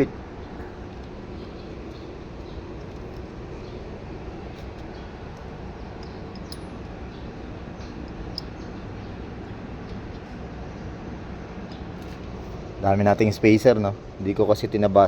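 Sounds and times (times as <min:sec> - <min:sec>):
low background hum: 0:00.0 - 0:15.0
bicycle parts clicking: 0:04.6 - 0:07.0.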